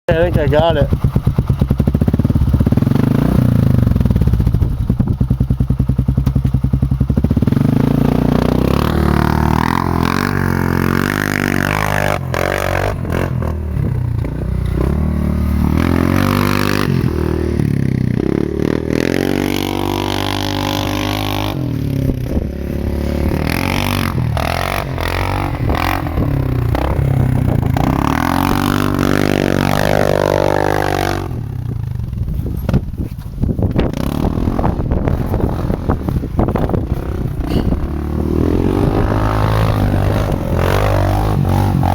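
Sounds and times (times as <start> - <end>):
atv engine revving: 0.1 - 41.9
knocks and rattles: 36.5 - 40.2.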